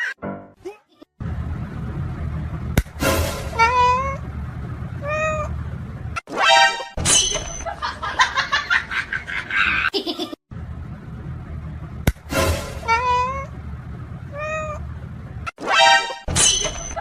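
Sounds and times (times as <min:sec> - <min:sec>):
cat meowing: 0:00.0 - 0:01.0, 0:14.3 - 0:14.8.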